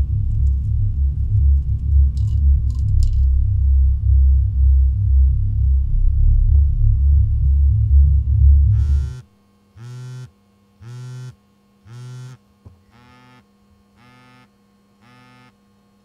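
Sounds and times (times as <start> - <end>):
deep rumble: 0.0 - 9.2
phone buzzing on vibrate: 8.6 - 15.7.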